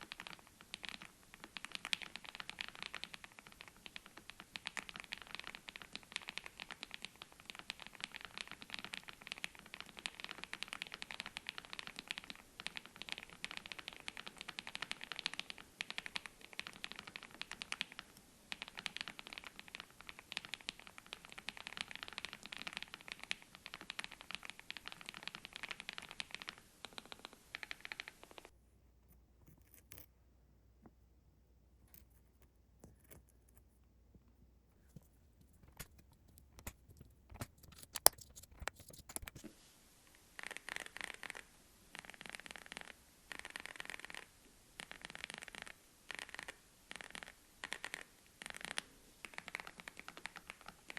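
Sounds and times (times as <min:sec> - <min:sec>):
fast typing on mechanical keyboard: 0:00.0 - 0:28.4, 0:42.0 - 0:50.9.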